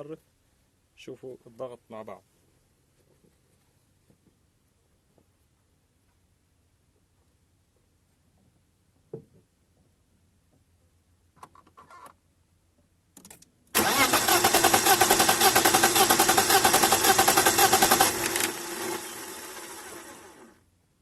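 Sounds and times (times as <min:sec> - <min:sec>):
engine cranking on starter: 0:13.8 - 0:20.6.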